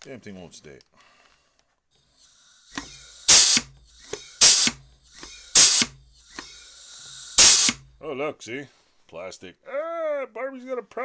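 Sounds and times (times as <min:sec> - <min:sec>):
compressed air hissing: 0:02.2 - 0:08.0
short blast of exhaust air: 0:02.2 - 0:08.0
rivet squeezer click: 0:02.6 - 0:07.9.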